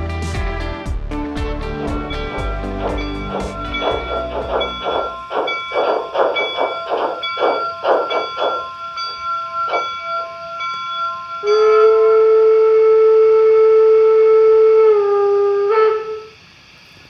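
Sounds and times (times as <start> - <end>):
thin steady tones: 1.8 - 14.8
model steam locomotive chuffing: 1.9 - 16.2.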